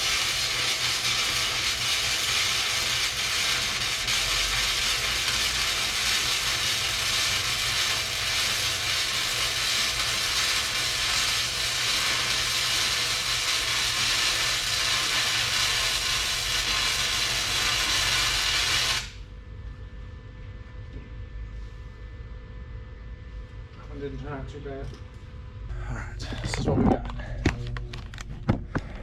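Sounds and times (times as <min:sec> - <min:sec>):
welder crackling hiss: 0:00.0 - 0:19.2.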